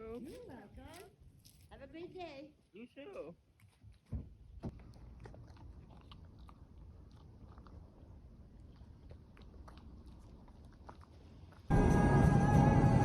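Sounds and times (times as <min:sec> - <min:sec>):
dog chewing a treat: 0:04.7 - 0:11.7
low steady rumble: 0:11.7 - 0:13.0.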